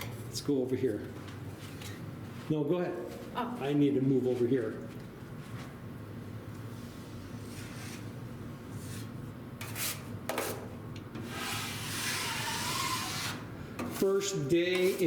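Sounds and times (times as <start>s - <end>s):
drywall knife scraping: 8.9s - 15.0s.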